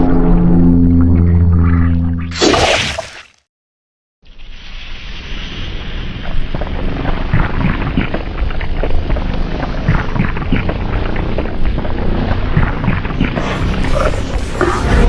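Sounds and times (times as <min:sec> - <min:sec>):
explosion rumble with crackling: 0:04.4 - 0:15.0.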